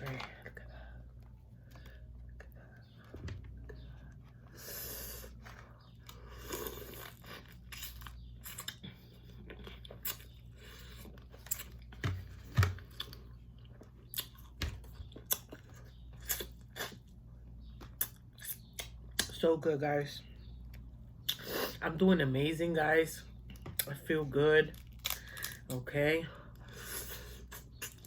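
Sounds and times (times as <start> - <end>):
chewing and crunching: 3.6 - 19.4, 23.3 - 28.0.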